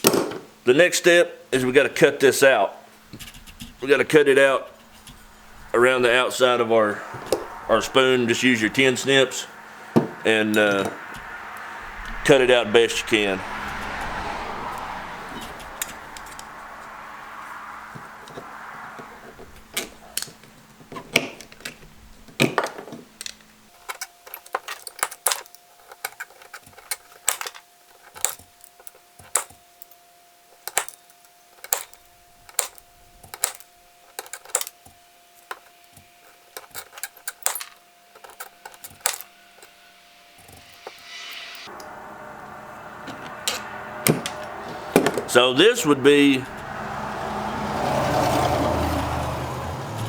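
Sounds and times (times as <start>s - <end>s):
rushing noise: 5.2s - 19.7s, 39.4s - 48.2s
tin snips cutting metal: 30.6s - 34.8s.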